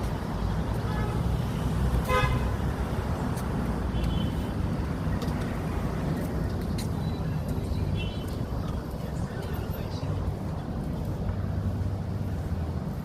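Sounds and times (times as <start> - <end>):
road traffic rumble: 0.0 - 13.0
car horn toot: 2.0 - 2.6.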